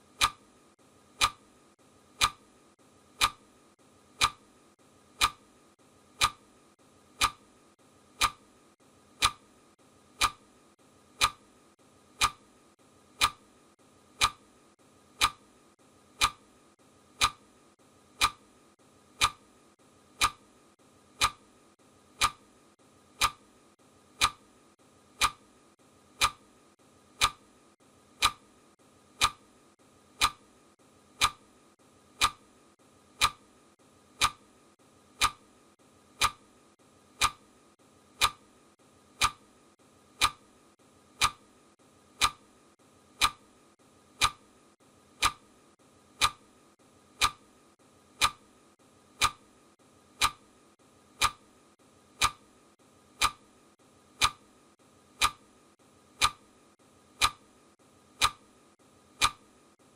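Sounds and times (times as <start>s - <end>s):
clock ticking: 0.0s - 0.5s, 1.1s - 1.5s, 2.1s - 2.5s, 3.1s - 3.5s, 4.1s - 4.5s, 5.1s - 5.5s, 6.1s - 6.5s, 7.1s - 7.5s, 8.1s - 8.5s, 9.2s - 9.5s, 10.1s - 10.5s, 11.1s - 11.5s, 12.1s - 12.5s, 13.1s - 13.5s, 14.1s - 14.5s, 15.1s - 15.5s, 16.1s - 16.5s, 17.1s - 17.5s, 18.1s - 18.5s, 19.1s - 19.5s, 20.1s - 20.5s, 21.1s - 21.5s, 22.1s - 22.5s, 23.1s - 23.5s, 24.1s - 24.5s, 25.1s - 25.5s, 26.1s - 26.5s, 27.2s - 27.5s, 28.2s - 28.5s, 29.2s - 29.5s, 30.2s - 30.5s, 31.1s - 31.5s, 32.1s - 32.5s, 33.1s - 33.5s, 34.1s - 34.5s, 35.1s - 35.5s, 36.1s - 36.5s, 37.1s - 37.5s, 38.2s - 38.5s, 39.2s - 39.5s, 40.2s - 40.5s, 41.2s - 41.5s, 42.2s - 42.5s, 43.2s - 43.5s, 44.2s - 44.5s, 45.2s - 45.5s, 46.1s - 46.5s, 47.1s - 47.5s, 48.2s - 48.5s, 49.2s - 49.5s, 50.2s - 50.5s, 51.2s - 51.5s, 52.2s - 52.5s, 53.2s - 53.5s, 54.2s - 54.5s, 55.2s - 55.5s, 56.2s - 56.5s, 57.2s - 57.4s, 58.2s - 58.5s, 59.2s - 59.5s.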